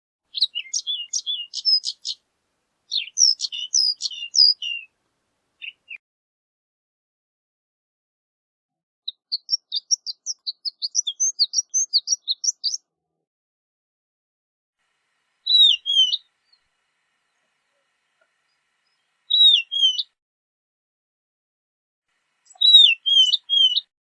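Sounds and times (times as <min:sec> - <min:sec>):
lark singing: 0:00.3 - 0:02.2, 0:02.9 - 0:04.9, 0:05.6 - 0:06.0, 0:09.1 - 0:12.9, 0:15.4 - 0:16.6, 0:18.9 - 0:20.2, 0:22.5 - 0:23.9.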